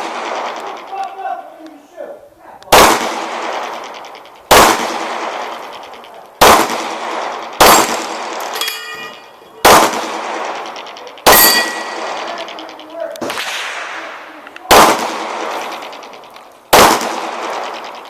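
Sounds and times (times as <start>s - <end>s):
pistol shots echoing: 0.0s - 1.7s, 2.6s - 18.0s
metallic ringing: 7.7s - 9.6s, 10.7s - 13.2s.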